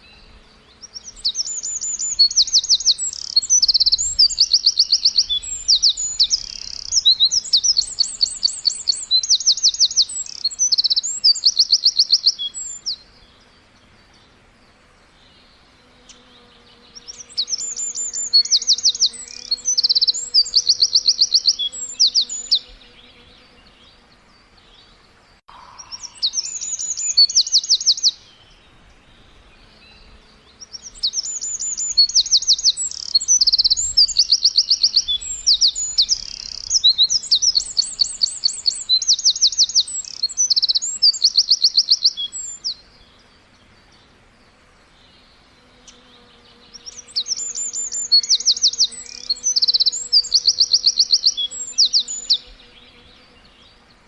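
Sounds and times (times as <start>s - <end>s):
songbird trilling: 0.9s - 13.0s, 16.0s - 22.8s, 25.5s - 28.4s, 30.6s - 42.8s, 46.6s - 52.6s.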